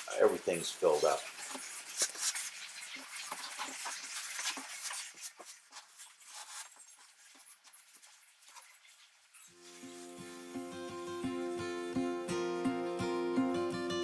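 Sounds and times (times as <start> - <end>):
grout scraping on tile: 0.0 - 10.4
acoustic guitar music: 9.6 - 14.0.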